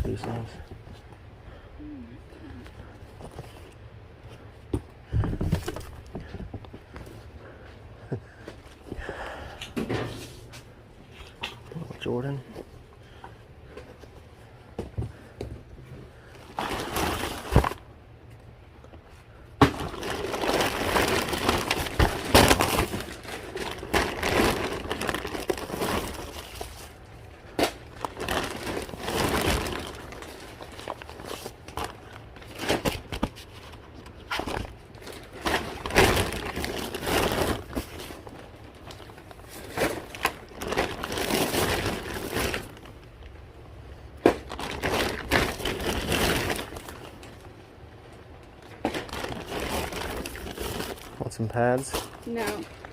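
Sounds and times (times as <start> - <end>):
bags and packaging crinkling: 0.0 - 1.7, 16.0 - 18.0, 19.1 - 52.9
items clattering into bins: 4.8 - 7.1, 8.3 - 10.6, 27.5 - 43.0.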